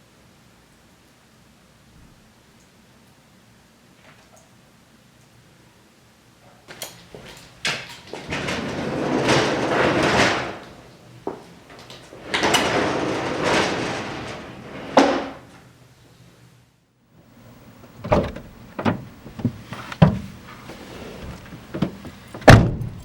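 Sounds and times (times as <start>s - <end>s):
long scraping slides: 8.1s - 11.0s, 11.6s - 15.6s.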